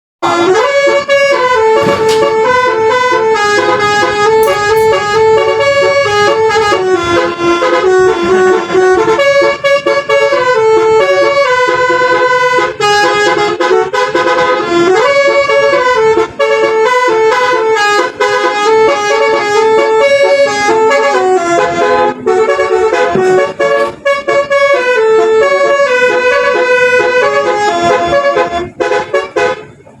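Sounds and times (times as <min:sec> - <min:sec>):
multi-tone bus horn melody: 0:00.2 - 0:30.0.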